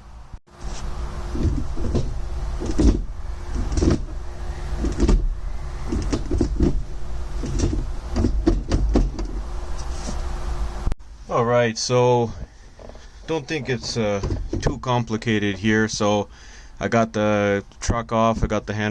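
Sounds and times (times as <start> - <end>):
gear lever clunks and clicks: 1.3 - 4.1, 7.4 - 9.4.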